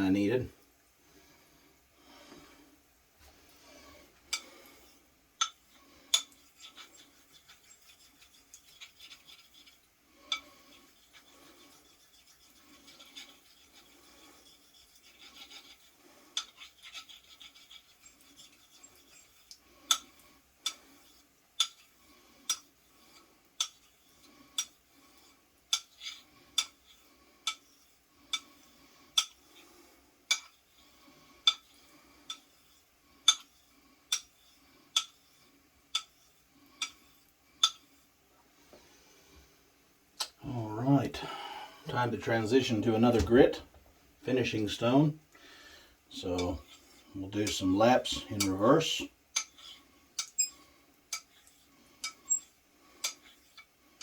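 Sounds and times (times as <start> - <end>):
razor clicking on stone: 5.4 - 20.8, 21.6 - 21.9, 31.4 - 31.7, 34.1 - 34.3, 49.3 - 50.5, 51.1 - 53.7
razor rubbing on whetstone: 5.4 - 29.8, 51.1 - 53.7.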